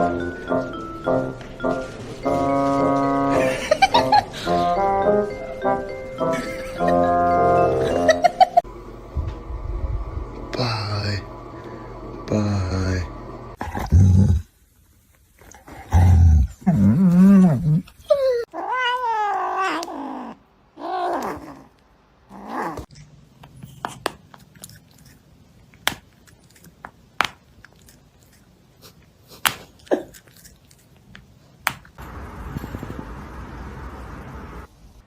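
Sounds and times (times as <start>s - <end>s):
cat yowling: 18.1s - 21.7s.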